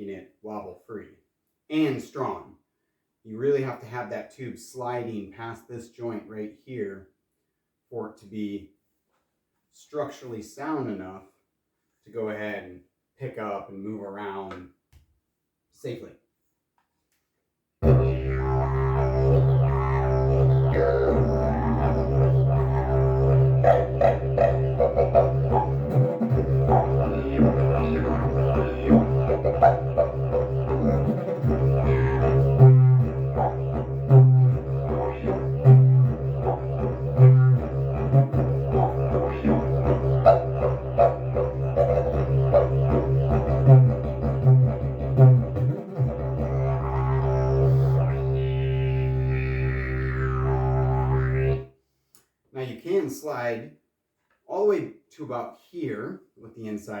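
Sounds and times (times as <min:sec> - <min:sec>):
didgeridoo low drone: 0:17.8 - 0:51.6.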